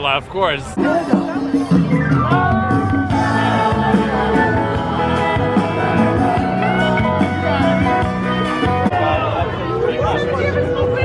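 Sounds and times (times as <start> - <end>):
country music with singing: 0.7 - 11.0.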